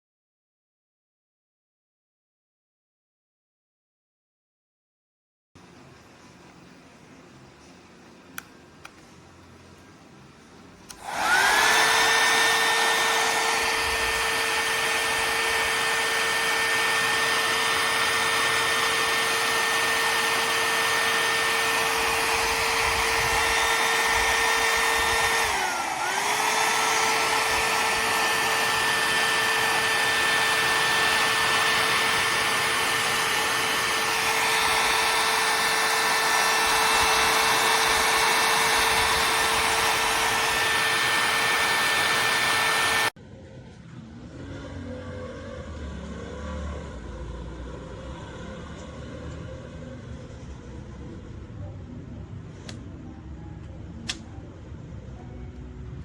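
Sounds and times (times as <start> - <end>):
hair dryer motor whine: 10.9 - 43.2.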